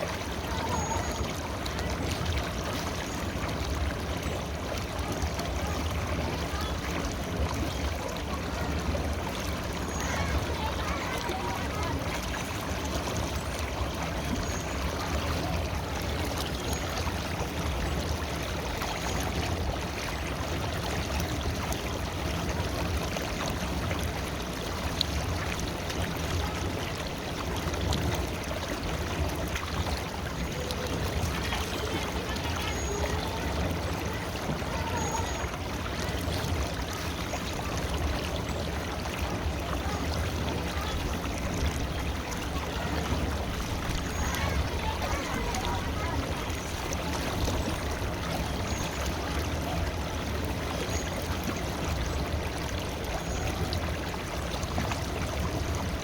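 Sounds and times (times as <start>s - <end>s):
stream rushing and babbling: 0.0s - 56.0s.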